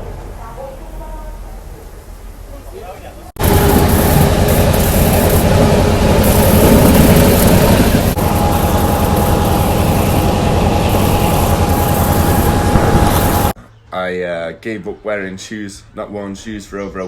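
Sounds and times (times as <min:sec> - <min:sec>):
train rumbling: 0:00.0 - 0:13.6
steady whine: 0:03.4 - 0:13.6.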